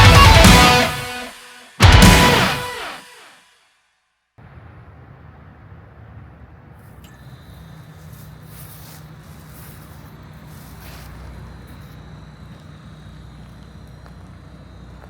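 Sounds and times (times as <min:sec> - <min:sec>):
low electrical hum: 0:04.4 - 0:15.0.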